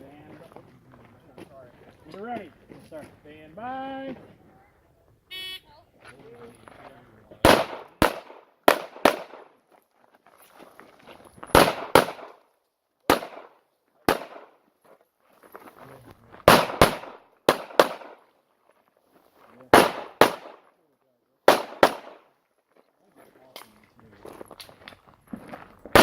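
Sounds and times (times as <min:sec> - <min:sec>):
pistol shots with echo: 0:07.4 - 0:09.6, 0:11.5 - 0:12.4, 0:13.1 - 0:14.6, 0:16.5 - 0:18.2, 0:19.7 - 0:20.7, 0:21.4 - 0:22.3.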